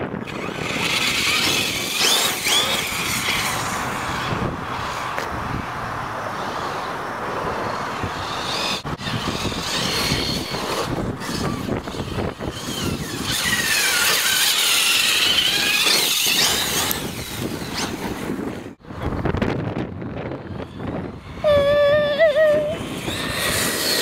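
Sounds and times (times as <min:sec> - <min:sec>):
steady rushing noise: 0:00.0 - 0:21.6
electric motor whining: 0:00.1 - 0:05.3, 0:08.0 - 0:18.7.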